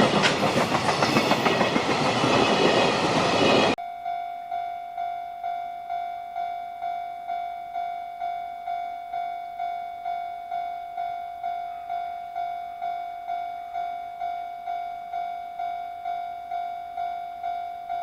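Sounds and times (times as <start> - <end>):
freight train rumbling past: 0.0 - 3.8.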